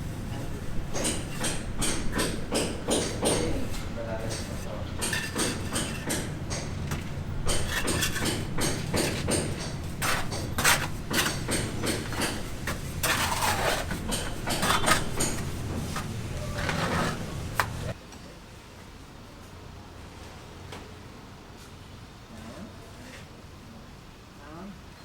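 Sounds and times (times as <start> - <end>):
knocks and clatter: 0.8 - 18.0.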